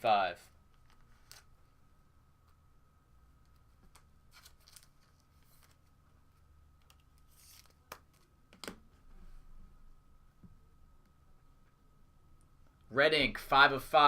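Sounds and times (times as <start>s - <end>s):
faint steady hum: 0.0s - 14.0s
trading cards rustling: 0.7s - 1.7s, 3.5s - 6.0s, 6.8s - 8.3s.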